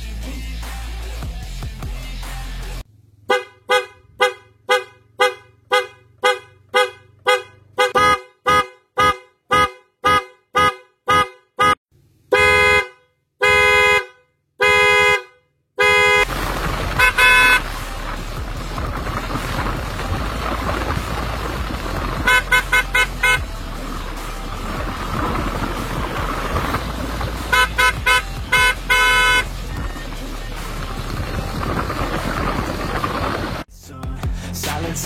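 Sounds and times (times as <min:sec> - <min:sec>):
horn beeps and blasts: 0:03.3 - 0:16.3, 0:16.9 - 0:17.8, 0:22.2 - 0:23.6, 0:27.4 - 0:29.8.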